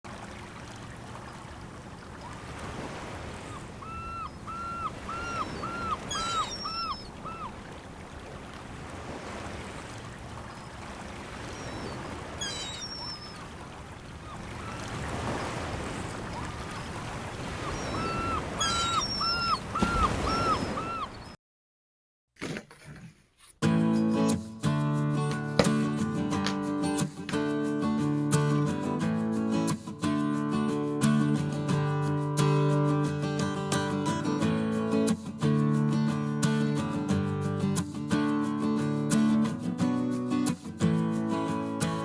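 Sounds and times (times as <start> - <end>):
surf washing in: 0.1 - 21.3
small birds chirping: 0.8 - 2.6, 3.2 - 8.8, 9.6 - 21.4
gull calling: 0.8 - 21.4.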